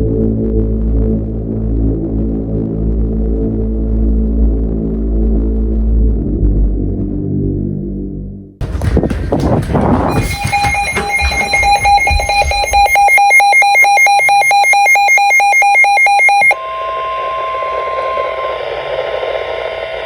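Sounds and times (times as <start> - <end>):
steady warning alarm tone: 8.6 - 20.0
rapid electronic alarm beeps: 10.1 - 16.6.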